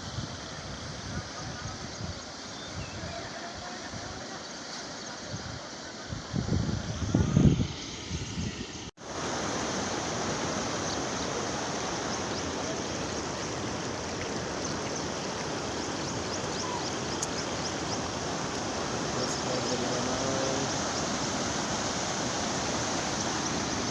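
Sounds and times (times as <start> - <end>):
floodwater rushing: 9.0 - 23.9.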